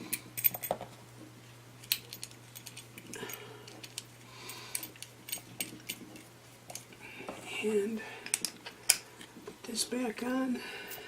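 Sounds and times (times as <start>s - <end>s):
small metal parts clicking: 0.4s - 0.8s, 1.8s - 6.8s.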